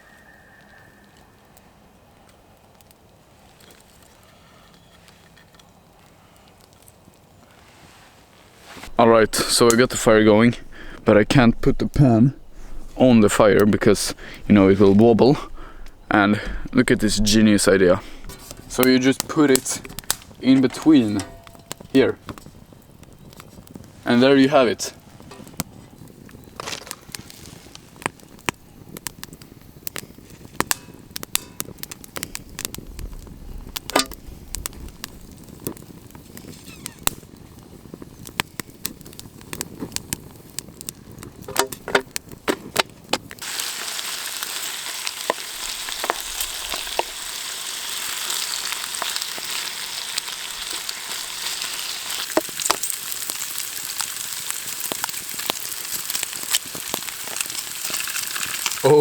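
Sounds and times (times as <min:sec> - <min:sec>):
campfire crackling with pops: 0:00.1 - 0:07.6, 0:08.3 - 0:59.0
bacon sizzling in a pan: 0:43.4 - 0:59.0.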